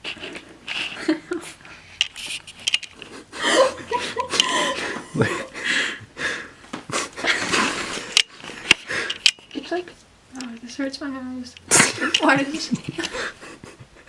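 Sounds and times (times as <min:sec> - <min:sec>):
people laughing: 0:03.3 - 0:06.0, 0:11.7 - 0:14.0.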